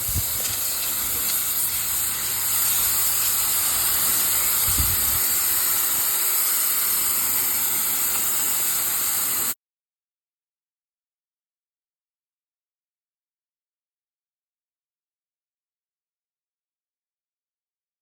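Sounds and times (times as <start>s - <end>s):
pressure washer spraying pavement: 0.0s - 9.6s.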